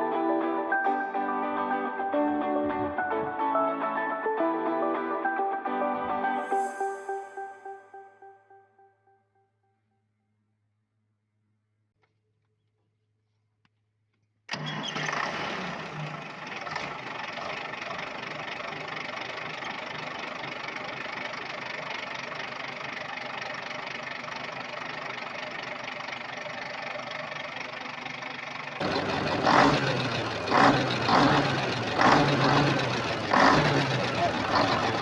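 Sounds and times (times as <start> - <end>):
diesel engine running: 14.5 - 35.0.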